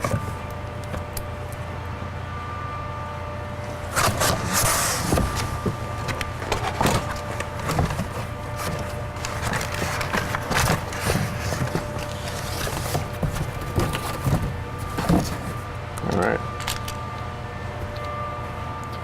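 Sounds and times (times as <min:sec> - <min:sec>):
packaging rustling and parts clattering: 0:00.0 - 0:01.3, 0:03.7 - 0:17.0
low background hum: 0:00.0 - 0:19.0.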